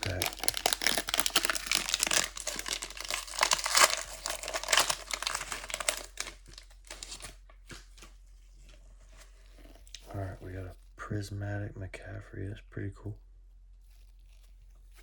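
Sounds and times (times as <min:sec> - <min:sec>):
wrapper crinkling and tearing: 0:00.0 - 0:08.2.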